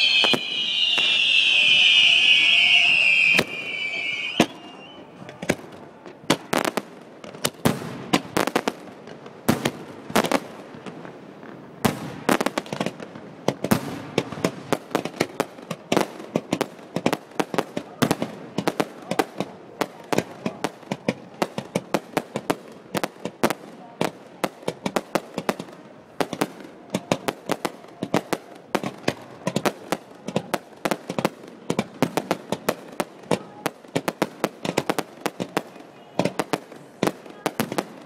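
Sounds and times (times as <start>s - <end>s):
firework whistle: 0.0s - 5.2s
firework bangs and crackling pops: 0.0s - 38.0s.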